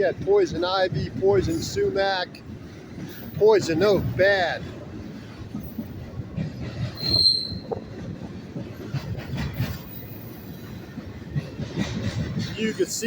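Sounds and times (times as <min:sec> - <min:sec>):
freight train rumbling: 0:00.0 - 0:13.0
high-pitched wheel squeal: 0:07.0 - 0:07.8.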